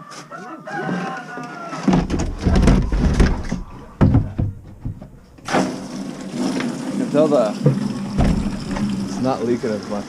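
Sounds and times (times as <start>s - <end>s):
heavy knocks: 1.9s - 5.5s, 7.7s - 8.9s
door rumbling and rattling: 1.9s - 6.4s, 7.8s - 9.2s.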